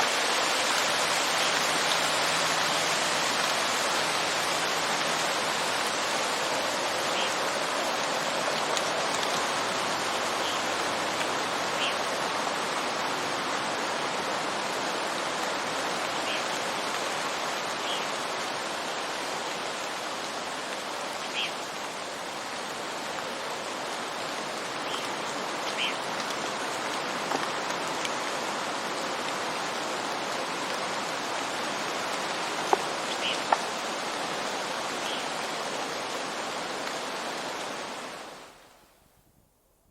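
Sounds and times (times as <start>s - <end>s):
heavy rain on leaves: 0.0s - 39.2s
water drops dripping onto wood: 32.6s - 33.7s.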